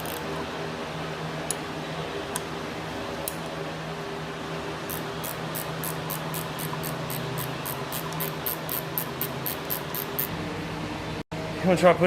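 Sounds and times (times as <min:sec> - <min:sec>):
socket ratchet clicking: 0:04.9 - 0:10.3.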